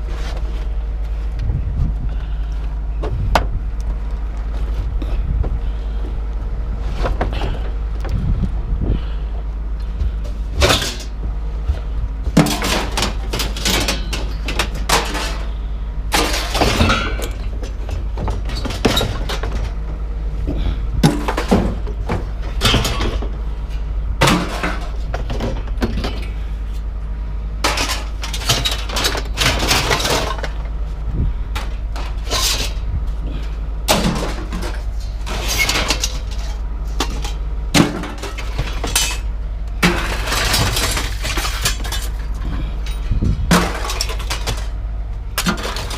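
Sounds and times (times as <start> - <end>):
low rumble: 0.0 - 45.9
scrap metal crashing onto pile: 10.6 - 11.2, 12.3 - 19.8, 20.6 - 23.3, 24.2 - 26.4, 27.6 - 30.7, 31.5 - 45.9.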